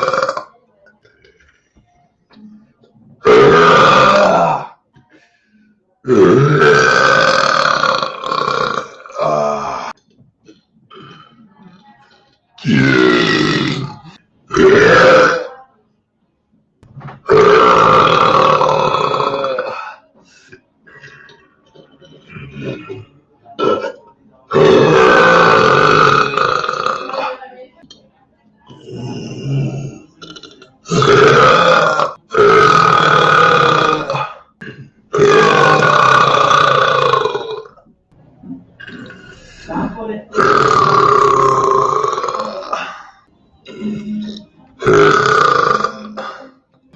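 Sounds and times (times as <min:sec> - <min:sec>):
person belching: 0:00.0 - 0:00.5, 0:03.2 - 0:04.8, 0:06.0 - 0:11.4, 0:12.6 - 0:15.6, 0:17.2 - 0:20.0, 0:22.2 - 0:27.4, 0:28.7 - 0:37.8, 0:38.8 - 0:46.6
person burping loudly: 0:00.0 - 0:01.6, 0:03.2 - 0:04.8, 0:06.0 - 0:11.8, 0:12.6 - 0:15.6, 0:17.2 - 0:21.5, 0:22.2 - 0:27.4, 0:28.7 - 0:37.8, 0:38.8 - 0:46.7.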